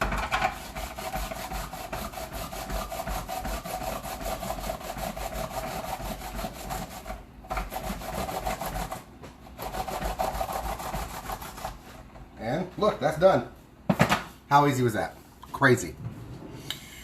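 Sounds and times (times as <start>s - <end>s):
cucumber rasping on grater: 0.0s - 11.8s.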